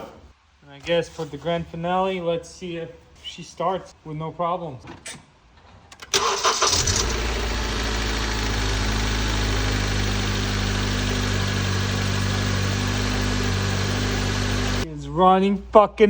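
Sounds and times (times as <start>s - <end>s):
car engine starting and idling: 6.0s - 14.9s.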